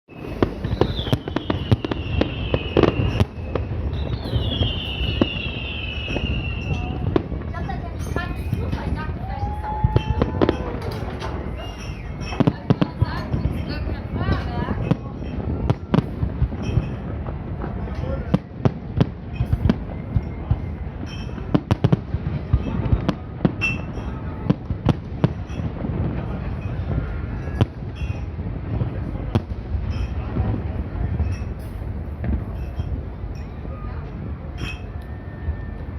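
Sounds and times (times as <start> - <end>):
fireworks bangs and crackles: 0.1 - 35.9
firework whistles sliding down: 0.2 - 7.2, 8.1 - 12.5.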